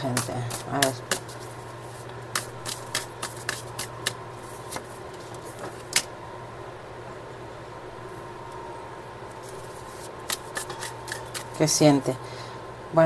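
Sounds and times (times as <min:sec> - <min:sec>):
cards shuffling: 0:00.0 - 0:06.1, 0:09.3 - 0:11.6
faint steady hum: 0:00.0 - 0:13.0.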